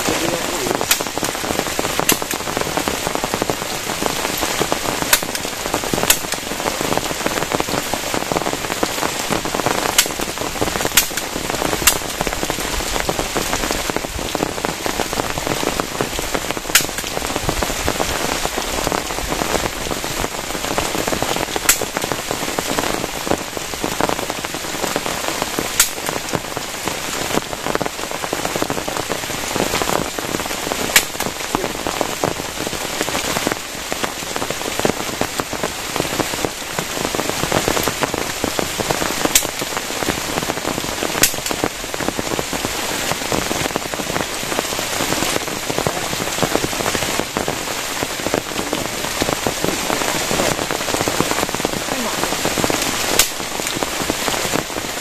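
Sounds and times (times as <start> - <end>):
loud single raindrops striking: 0.0 - 19.7, 21.4 - 22.2, 25.7 - 26.5, 30.8 - 32.4, 38.7 - 39.8, 41.0 - 42.7, 48.1 - 55.0
heavy rain: 0.0 - 55.0.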